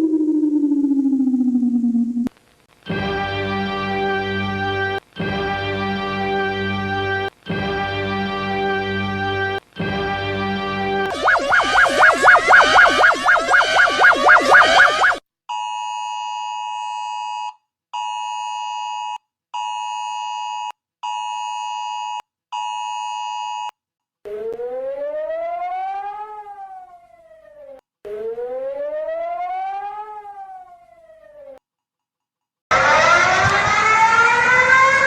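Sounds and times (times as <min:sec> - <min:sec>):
warning siren wail: 0:00.0 - 0:02.3, 0:11.0 - 0:15.2, 0:24.3 - 0:31.6, 0:32.7 - 0:35.0.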